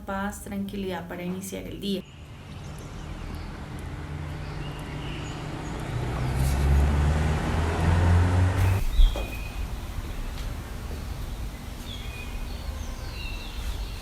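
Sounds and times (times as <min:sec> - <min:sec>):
vehicle engine rumble: 0:02.0 - 0:12.4.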